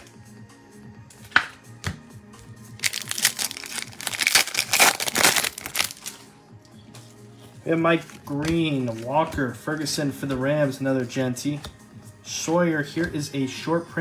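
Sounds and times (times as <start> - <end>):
quiet background music: 0.0 - 14.0
wrapper tearing and crinkling: 2.8 - 6.3.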